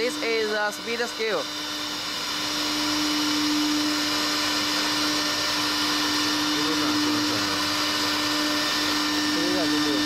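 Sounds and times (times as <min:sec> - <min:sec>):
router spindle motor whining: 0:00.0 - 0:10.0.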